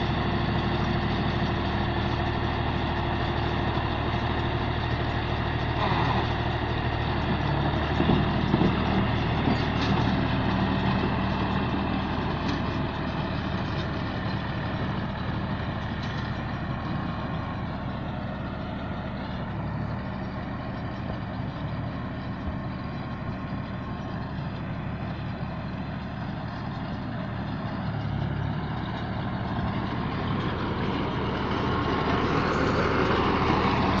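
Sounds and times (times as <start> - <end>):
baler machine engine running: 0.0 - 34.0.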